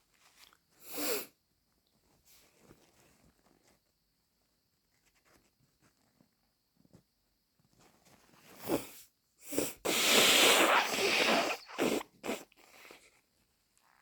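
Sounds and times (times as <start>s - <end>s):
person sneezing: 9.5s - 12.5s.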